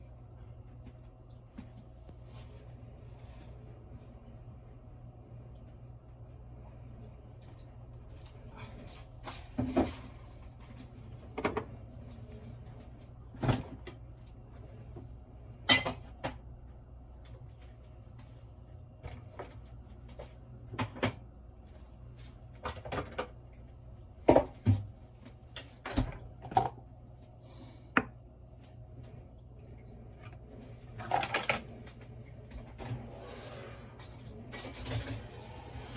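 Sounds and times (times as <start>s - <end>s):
low steady hum: 0.0s - 35.9s
knocks and clunks of kitchen items: 9.3s - 12.2s, 13.3s - 14.1s, 14.9s - 16.5s, 19.0s - 21.4s, 22.5s - 23.5s, 24.2s - 26.9s, 30.2s - 33.3s.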